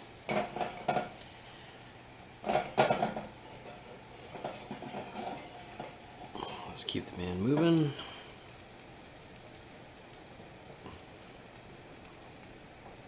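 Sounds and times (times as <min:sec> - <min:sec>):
frying pan scraping: 0:00.2 - 0:01.2, 0:02.4 - 0:07.9
frying pan knocking on stovetop: 0:00.3 - 0:01.2, 0:02.4 - 0:03.4.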